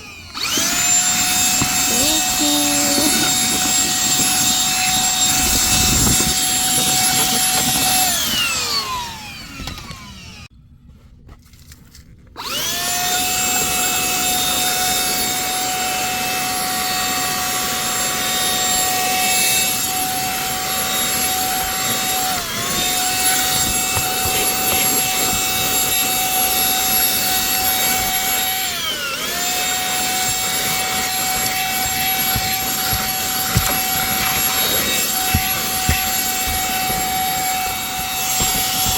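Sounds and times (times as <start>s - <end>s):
handheld vacuum motor whining: 0.0s - 10.5s, 12.4s - 38.9s.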